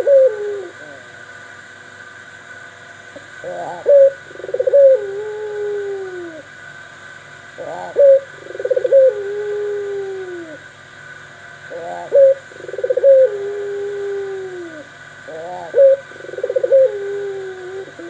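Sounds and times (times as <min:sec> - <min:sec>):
bird calling: 0:00.0 - 0:01.1, 0:03.2 - 0:06.5, 0:07.5 - 0:10.7, 0:11.6 - 0:18.0.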